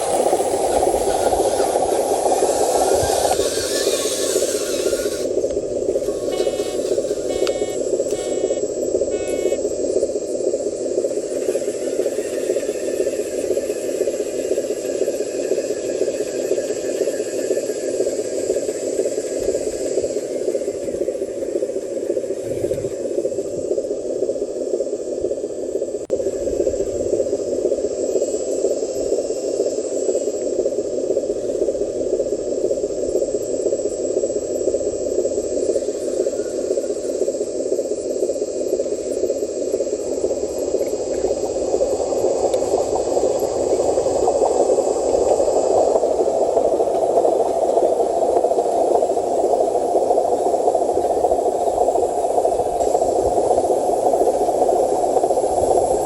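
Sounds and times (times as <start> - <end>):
toy truck electric motors whirring: 0.0 - 9.6.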